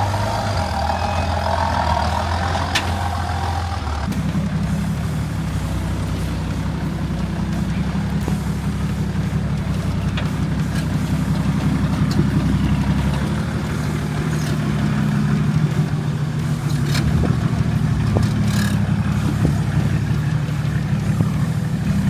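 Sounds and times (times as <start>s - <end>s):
vehicle engine at low revs: 0.0s - 22.0s.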